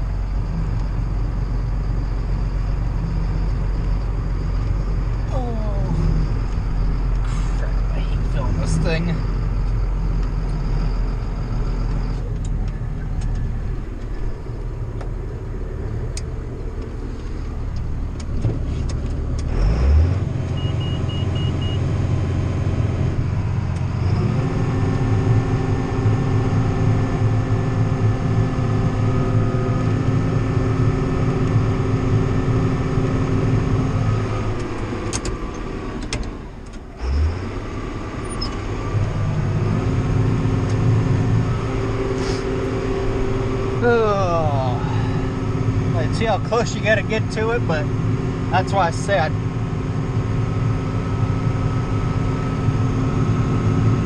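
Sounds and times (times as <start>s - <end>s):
tractor diesel engine running: 0.0s - 54.0s
faint beeps: 0.5s - 13.5s, 20.6s - 21.8s.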